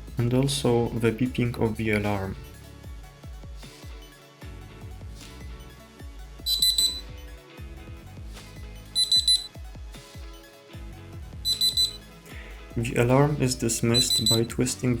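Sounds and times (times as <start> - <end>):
background music: 0.0 - 15.0
watch alarm beeping: 6.5 - 7.1, 9.0 - 9.5, 11.4 - 12.0, 13.9 - 14.5.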